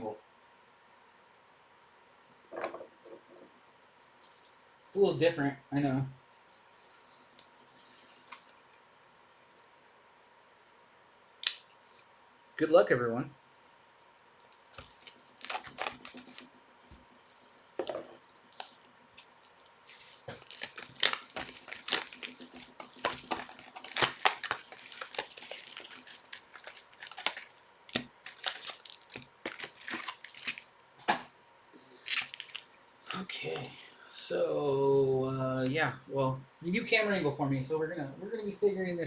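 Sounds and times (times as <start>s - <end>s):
packaging crinkling: 14.4s - 30.8s, 32.0s - 33.3s
plastic packaging tearing: 14.5s - 30.7s, 32.0s - 33.3s.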